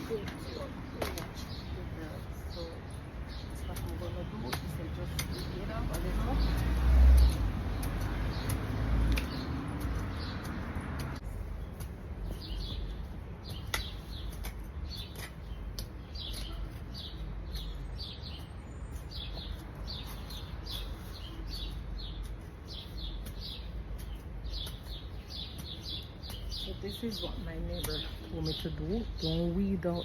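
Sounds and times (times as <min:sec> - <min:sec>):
small birds chirping: 0:00.0 - 0:30.0.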